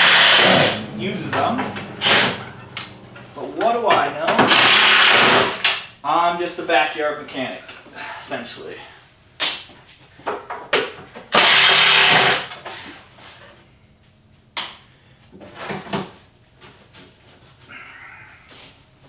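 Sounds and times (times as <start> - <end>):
loud harsh burst: 0.0 - 5.6.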